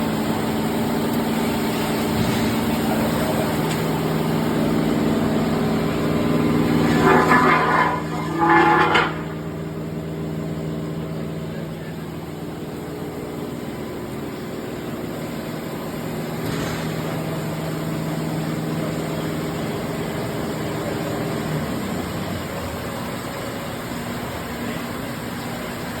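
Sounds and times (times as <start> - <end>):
grinder machine hum: 0.0 - 15.1.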